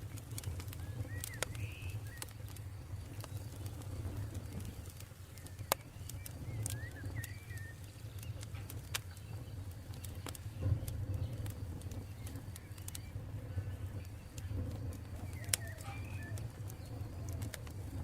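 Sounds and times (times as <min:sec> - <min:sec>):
campfire crackling and popping: 0:00.0 - 0:18.0
low rumble of flames: 0:00.0 - 0:18.0
bird twittering: 0:00.8 - 0:02.3, 0:05.3 - 0:08.2.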